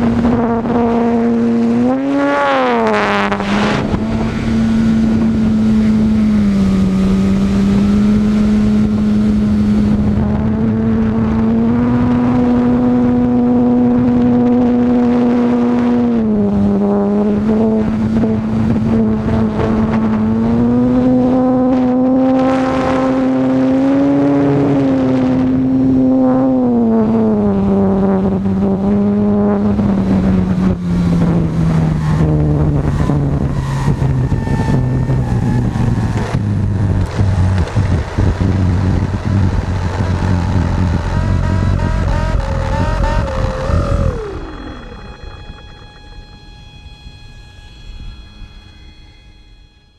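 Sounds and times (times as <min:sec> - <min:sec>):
rushing air noise: 0:02.9 - 0:07.2, 0:32.7 - 0:48.4
electric motor and propeller drone: 0:31.1 - 0:49.2.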